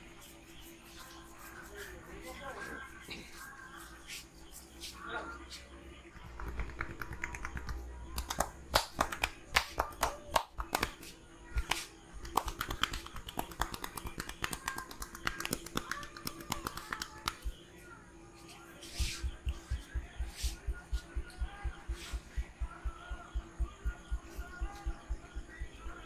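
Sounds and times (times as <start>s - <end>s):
hands tapping and slapping head: 6.2s - 17.6s.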